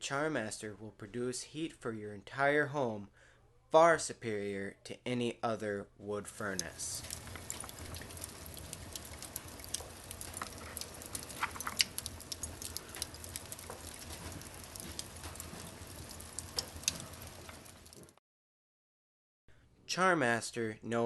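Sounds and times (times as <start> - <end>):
wood fire crackling: 6.5 - 18.2
steady low hum: 6.6 - 18.1.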